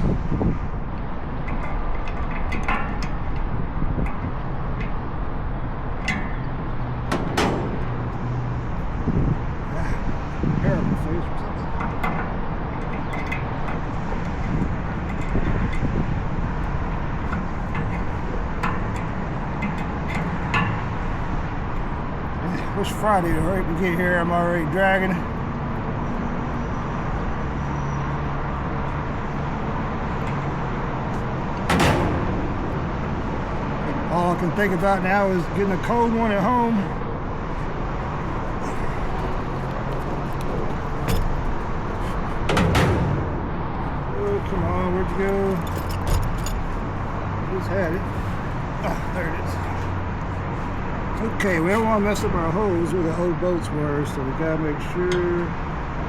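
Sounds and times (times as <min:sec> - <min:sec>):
steady low rumble: 0:00.0 - 0:26.2, 0:28.2 - 0:53.6
knocks of tools being handled: 0:01.4 - 0:10.4, 0:11.6 - 0:22.4, 0:28.8 - 0:34.8, 0:38.5 - 0:46.8.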